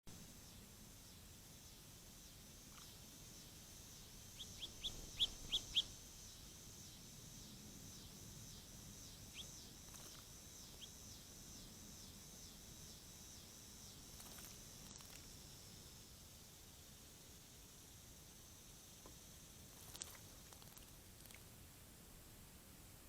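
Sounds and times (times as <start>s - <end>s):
pulsing insect chorus: 0.1s - 22.2s
finch chirping: 4.3s - 6.0s, 9.3s - 11.0s.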